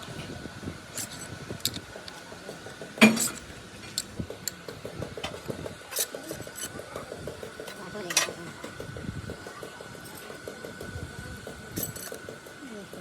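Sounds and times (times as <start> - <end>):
metal tools clinking: 3.0 - 4.1.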